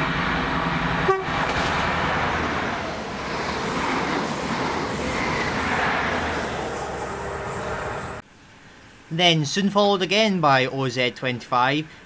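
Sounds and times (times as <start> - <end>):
diesel train passing: 0.0 - 8.2
short sharp train horn toot: 1.0 - 1.4.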